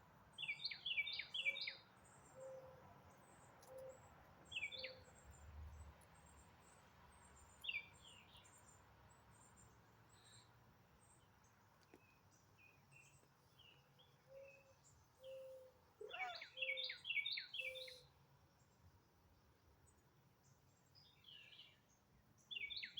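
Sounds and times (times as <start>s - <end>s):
birds chirping: 6.2s - 18.0s.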